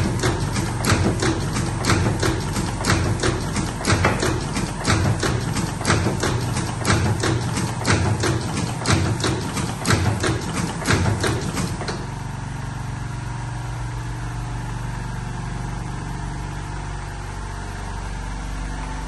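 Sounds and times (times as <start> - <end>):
rolling machine clacking: 0.0 - 12.2
motor hum: 0.0 - 19.0.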